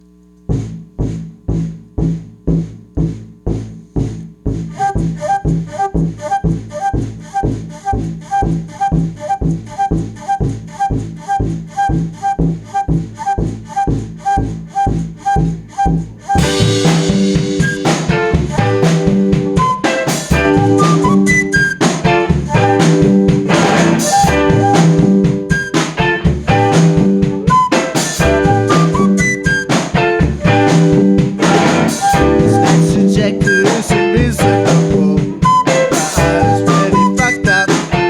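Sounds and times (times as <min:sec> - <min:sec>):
steady drum beat: 0:00.5 - 0:06.6, 0:16.4 - 0:38.0
repeating higher note: 0:16.4 - 0:37.8
full band playing: 0:16.4 - 0:38.0.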